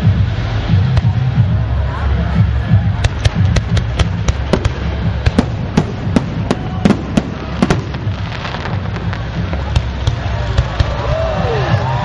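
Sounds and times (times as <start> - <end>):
crackling firework fizz: 0.0 - 12.0
low rumble: 0.0 - 12.0
firework shells bursting: 3.0 - 11.2.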